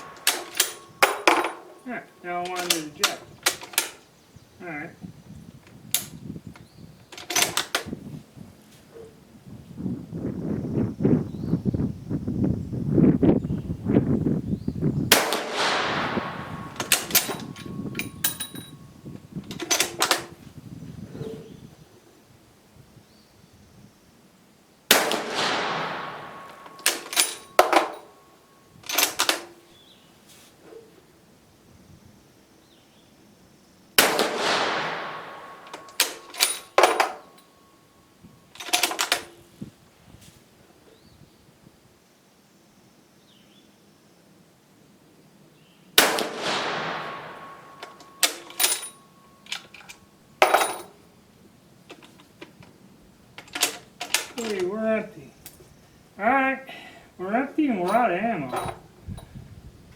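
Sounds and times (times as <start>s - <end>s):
rifle shot echoing: 0.0s - 3.1s, 15.1s - 18.4s, 24.9s - 28.2s, 34.0s - 37.4s, 46.0s - 49.4s
rifle bolt metallic clacks: 0.0s - 4.0s, 15.1s - 18.8s, 19.4s - 20.4s, 24.9s - 28.2s, 28.9s - 29.6s, 34.0s - 37.5s, 38.6s - 39.4s, 46.0s - 50.9s, 53.4s - 54.8s, 57.8s - 58.9s.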